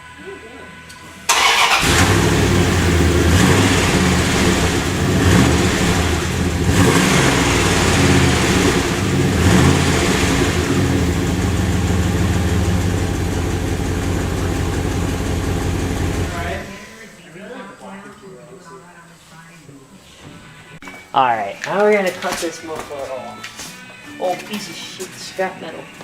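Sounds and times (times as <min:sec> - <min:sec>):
truck engine revving and idling: 0:01.3 - 0:16.7.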